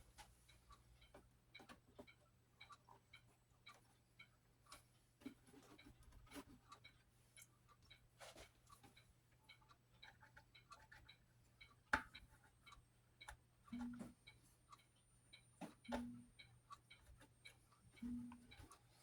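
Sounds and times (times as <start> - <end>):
mechanical clock ticking: 8.7 - 19.0.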